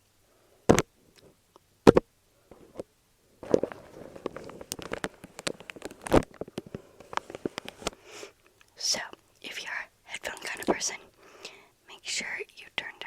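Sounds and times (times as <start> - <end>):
fast crackling and clicking: 3.4 - 8.0.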